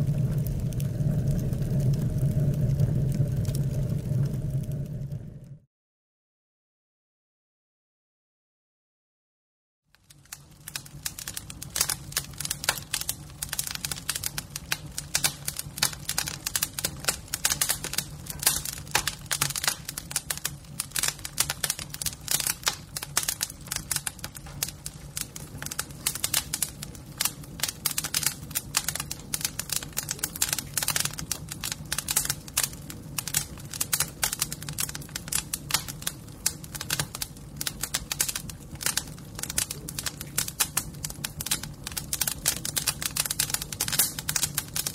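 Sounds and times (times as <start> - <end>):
fire crackling and popping: 0.0 - 5.6, 9.9 - 44.9
steady low rumble: 0.0 - 5.6.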